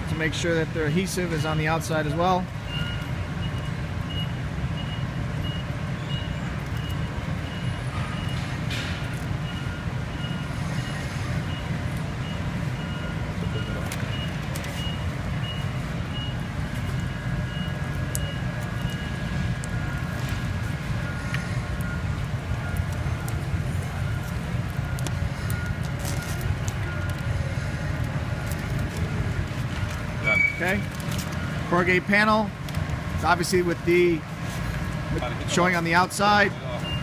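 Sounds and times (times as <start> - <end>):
reversing alarm beeping: 0.2 - 32.5, 35.5 - 37.0
steady low rumble: 11.3 - 35.5.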